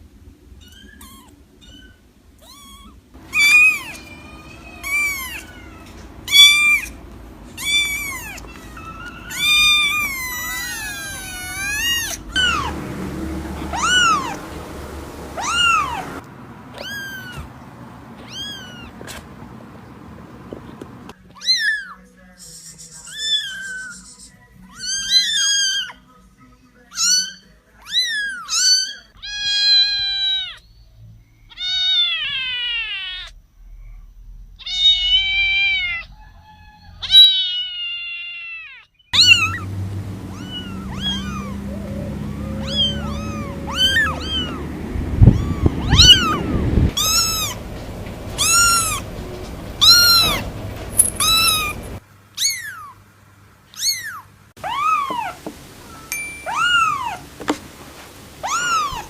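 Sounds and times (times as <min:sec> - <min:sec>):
kittens meowing: 0:00.6 - 0:17.5, 0:18.2 - 0:19.2, 0:21.3 - 0:22.0, 0:23.0 - 0:26.1, 0:26.9 - 0:30.7, 0:31.5 - 0:33.4, 0:34.6 - 0:53.0, 0:53.7 - 0:57.3, 0:58.4 - 0:59.0
low rumble: 0:03.2 - 0:16.9, 0:39.2 - 0:52.0.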